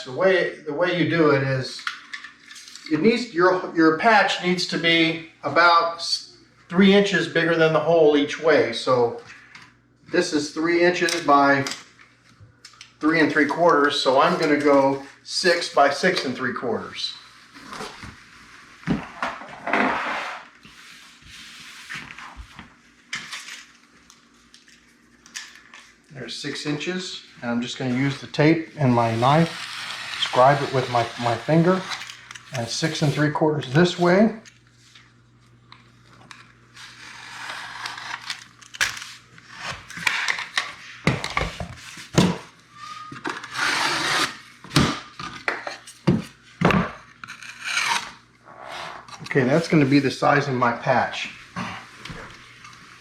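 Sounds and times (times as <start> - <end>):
drywall scraping and rustling: 17.4 - 22.5, 27.8 - 34.3
scraping and rubbing on drywall: 28.8 - 32.0.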